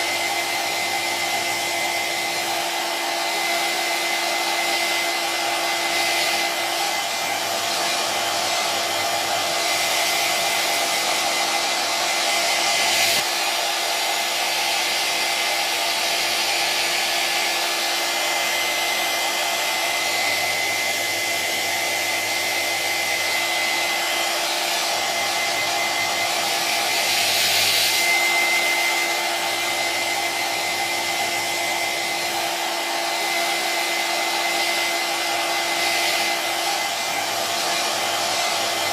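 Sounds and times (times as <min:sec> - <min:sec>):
hair dryer running: 0:00.0 - 0:38.9.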